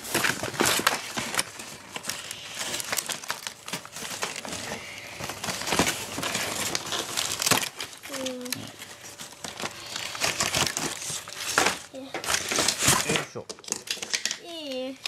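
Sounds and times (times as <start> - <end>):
packaging crinkling and rustling: 0.0 - 15.0
plastic parts clicking and knocking: 10.2 - 15.0.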